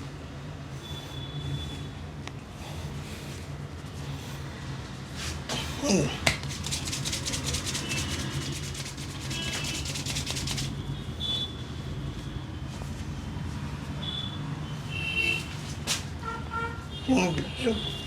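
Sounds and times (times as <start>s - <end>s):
hands rubbing hair: 6.2s - 10.8s.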